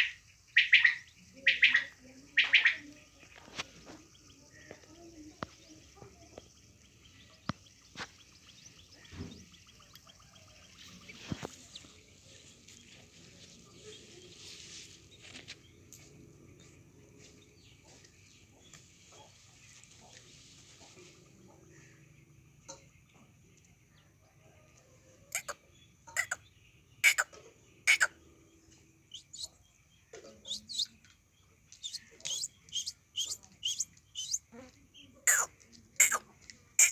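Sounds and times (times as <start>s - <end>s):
quail chirping: 0.0s - 4.9s, 6.5s - 12.9s, 25.3s - 28.2s, 29.1s - 29.6s, 30.2s - 31.0s, 31.7s - 36.9s
quick thin chirps: 30.4s - 31.0s, 31.8s - 34.5s.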